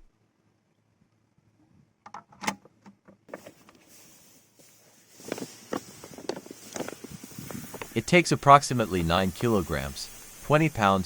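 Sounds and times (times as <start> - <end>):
sand pouring into plastic tank: 3.3 - 11.0.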